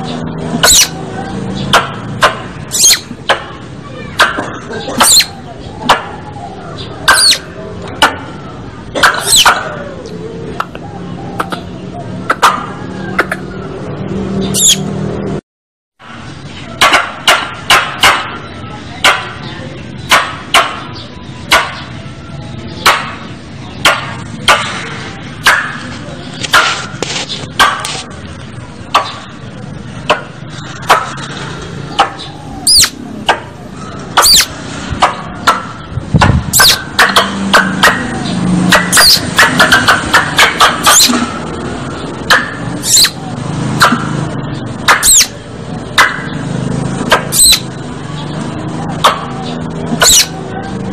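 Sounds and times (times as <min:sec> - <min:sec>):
squirrel chipping calls: 0:00.5 - 0:10.0, 0:10.6 - 0:13.6, 0:14.4 - 0:14.9, 0:31.9 - 0:33.4, 0:34.0 - 0:41.2, 0:41.9 - 0:45.4, 0:46.0 - 0:47.8, 0:49.0 - 0:50.5.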